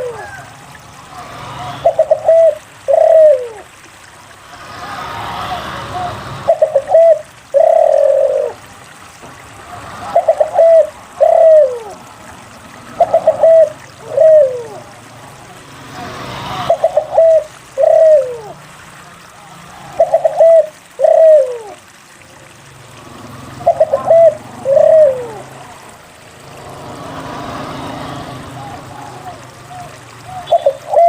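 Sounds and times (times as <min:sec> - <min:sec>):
dove cooing: 0:00.0 - 0:00.5, 0:01.6 - 0:03.7, 0:04.8 - 0:08.6, 0:10.0 - 0:12.0, 0:13.0 - 0:15.1, 0:16.4 - 0:18.6, 0:19.7 - 0:21.8, 0:23.6 - 0:25.9, 0:28.0 - 0:31.0.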